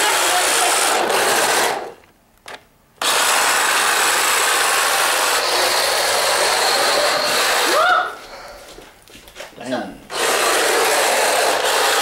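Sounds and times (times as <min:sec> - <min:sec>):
electric motor whirring: 0:00.0 - 0:02.0, 0:03.0 - 0:07.8, 0:10.1 - 0:12.0
tyres scrubbing on floor: 0:08.3 - 0:12.0.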